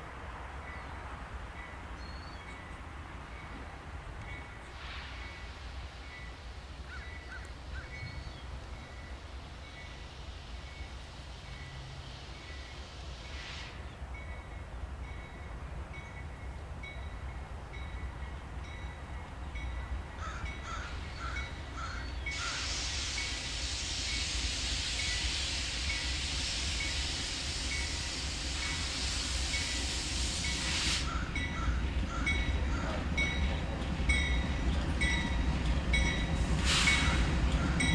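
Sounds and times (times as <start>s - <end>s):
loud rushing hiss of locomotives: 2.9s - 15.0s, 19.9s - 37.9s.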